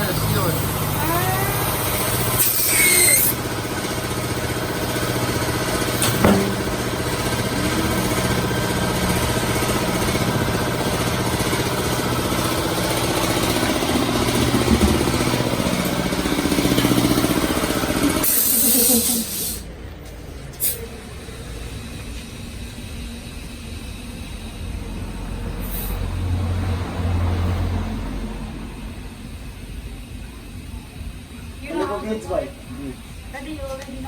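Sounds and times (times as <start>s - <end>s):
sharp knock: 6.0s - 7.3s
short hiss: 18.2s - 19.6s.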